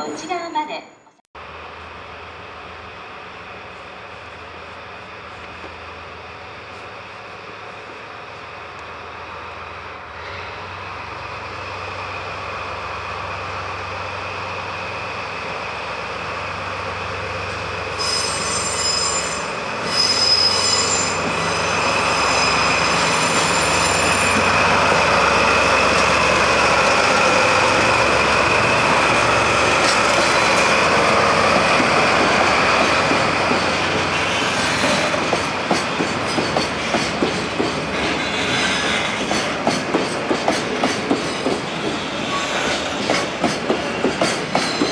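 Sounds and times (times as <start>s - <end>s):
train rolling along rails: 1.4s - 44.9s
high-pitched wheel squeal: 18.0s - 24.4s.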